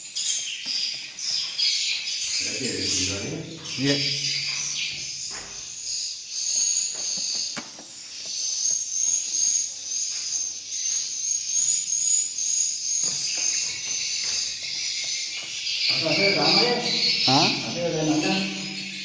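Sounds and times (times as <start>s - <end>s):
swiftlets twittering: 11.3s - 19.0s.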